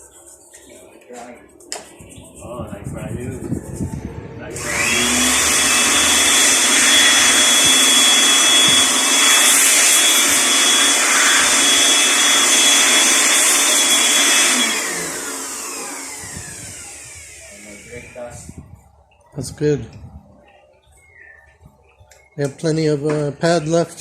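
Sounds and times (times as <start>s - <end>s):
small vacuum whining: 3.4s - 18.8s.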